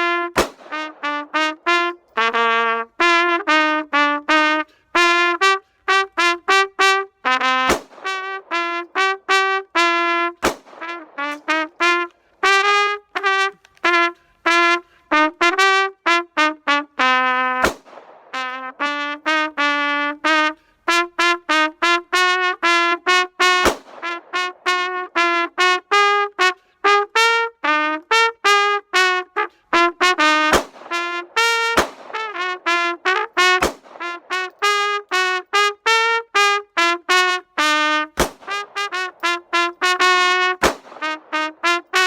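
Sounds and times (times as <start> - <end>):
trumpet playing fast melody: 0.0 - 42.0
sharp gunshot-like cracks: 0.4 - 1.0, 7.7 - 8.2, 10.4 - 11.6, 17.6 - 18.4, 23.7 - 24.2, 30.6 - 31.0, 31.8 - 32.3, 33.6 - 34.2, 38.2 - 38.7, 40.6 - 41.4.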